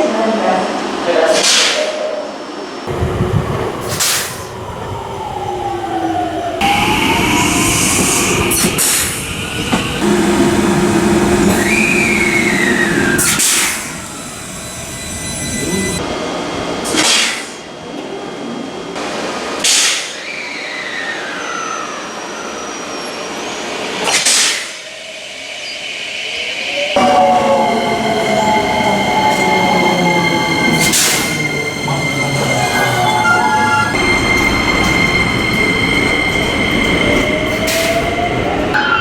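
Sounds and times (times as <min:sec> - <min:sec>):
train running noise: 0:02.4 - 0:20.0, 0:26.7 - 0:39.0
rising and falling whine: 0:10.0 - 0:16.0
sharp air blasts: 0:11.5 - 0:14.0.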